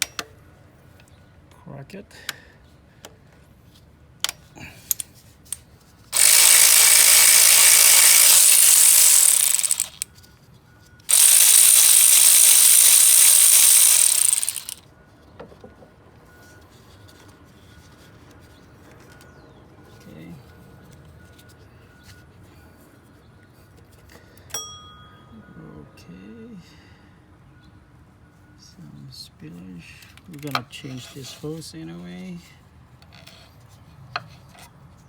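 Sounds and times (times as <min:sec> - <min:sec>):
cordless power tool spinning bolts: 0:06.2 - 0:10.0, 0:11.1 - 0:14.8.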